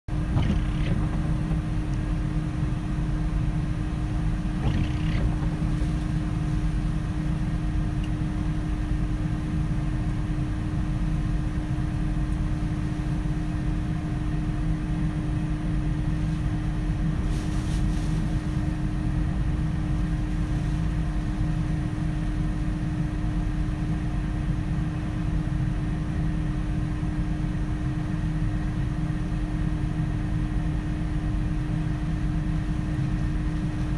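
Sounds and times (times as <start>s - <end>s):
low rumble: 0.1s - 9.0s
droning hum: 0.1s - 33.9s.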